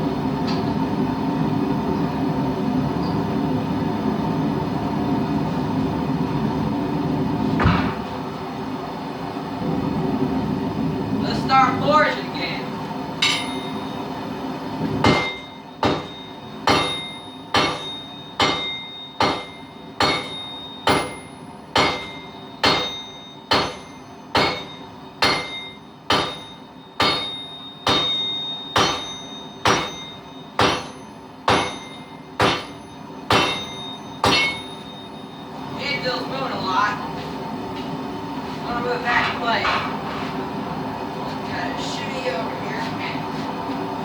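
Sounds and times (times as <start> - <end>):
hammer striking steel on anvil: 13.2 - 13.9, 15.0 - 35.0.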